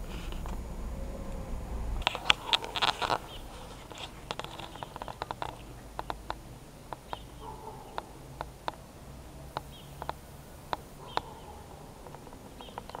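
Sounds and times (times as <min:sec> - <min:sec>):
wind rumbling: 0:00.0 - 0:13.0
sharp clicks: 0:02.0 - 0:08.8.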